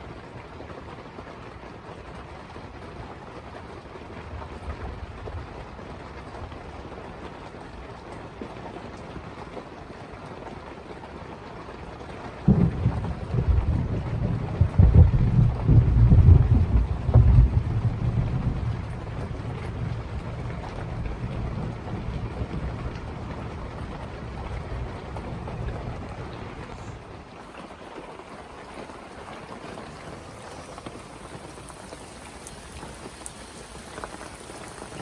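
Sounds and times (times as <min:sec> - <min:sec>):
steady rain: 0:00.0 - 0:35.0
raindrop ticks: 0:03.4 - 0:35.0
distant thunder rumble: 0:12.4 - 0:35.0.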